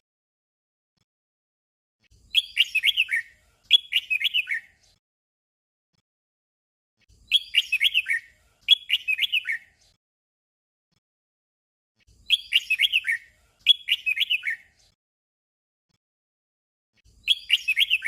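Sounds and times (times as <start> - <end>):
bird singing whistled phrase: 2.3 - 4.8, 7.3 - 9.8, 12.2 - 14.8, 17.1 - 18.0.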